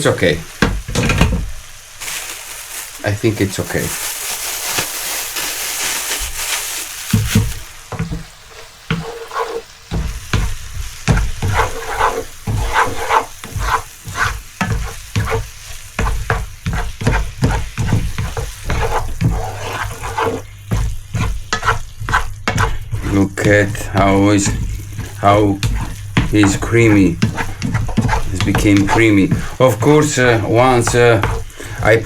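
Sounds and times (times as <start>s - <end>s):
light sizzle: 0.0s - 32.0s
utensil scraping a frying pan: 7.1s - 32.0s.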